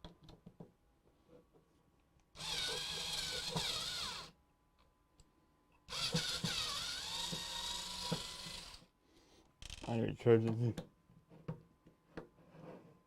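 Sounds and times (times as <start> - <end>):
electric screwdriver driving screws: 2.4 - 4.3, 5.9 - 8.8.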